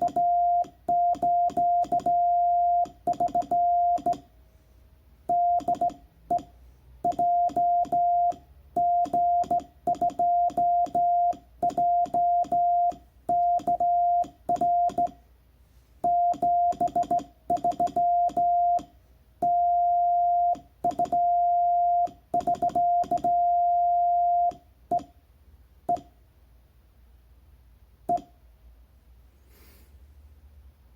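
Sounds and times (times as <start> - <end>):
morse code beeps: 0.0 - 4.3, 5.3 - 15.2, 16.0 - 25.1.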